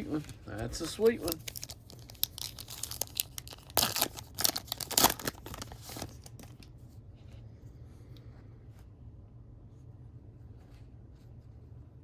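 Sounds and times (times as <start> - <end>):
plastic packaging crinkling: 0.0 - 6.7.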